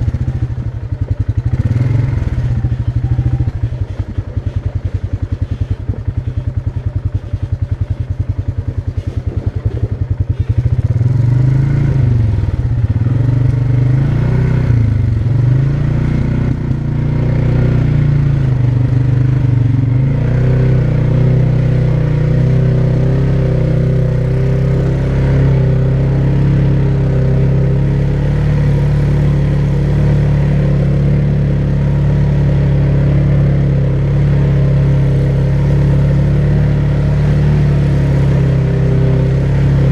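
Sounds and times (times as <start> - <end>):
quad bike engine chugging: 0.0 - 39.9.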